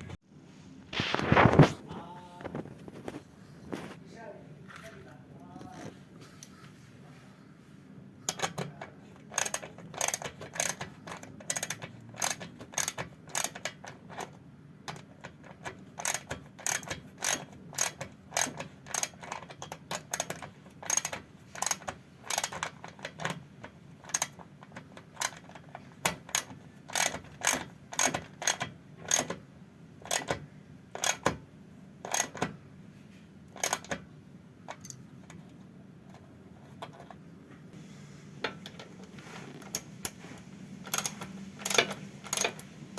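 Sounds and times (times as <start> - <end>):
ratchet wrench clicking: 9.3 - 10.8, 11.5 - 13.8, 16.0 - 19.2, 20.0 - 22.6, 26.3 - 29.3, 32.1 - 32.4, 40.9 - 42.6.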